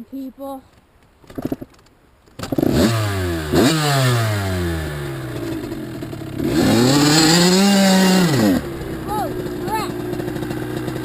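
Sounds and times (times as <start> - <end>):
dirt bike engine revving: 2.4 - 11.0.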